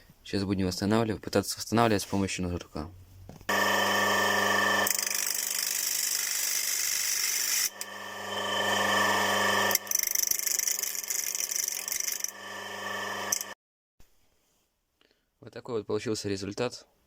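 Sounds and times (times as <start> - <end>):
electric grinder motor whining: 3.5 - 13.6.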